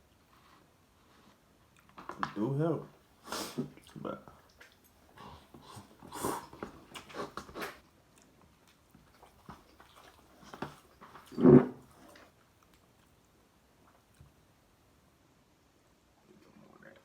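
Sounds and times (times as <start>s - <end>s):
wet chewing and slurping: 3.3s - 13.1s.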